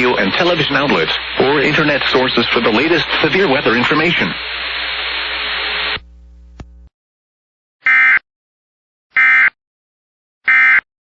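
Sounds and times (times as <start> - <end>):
faint hum: 0.0 - 6.9
radio hiss: 0.0 - 6.9.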